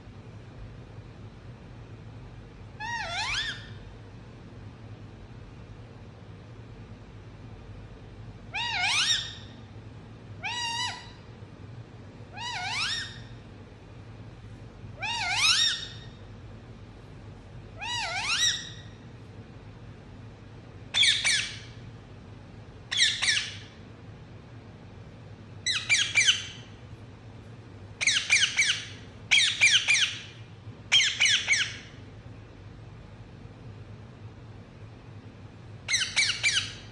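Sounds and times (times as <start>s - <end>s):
parakeet squawking: 2.8s - 3.8s, 8.5s - 9.6s, 10.4s - 11.2s, 12.4s - 13.3s, 15.0s - 16.2s, 17.8s - 19.0s, 20.9s - 21.8s, 22.9s - 23.7s, 25.6s - 26.7s, 28.0s - 31.9s, 35.9s - 36.9s.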